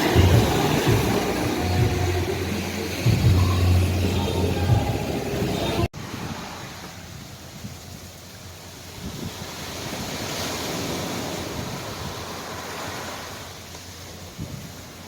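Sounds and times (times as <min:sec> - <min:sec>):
ocean surf washing in: 0:00.0 - 0:15.0
wind on microphone: 0:08.8 - 0:13.6, 0:14.2 - 0:15.0.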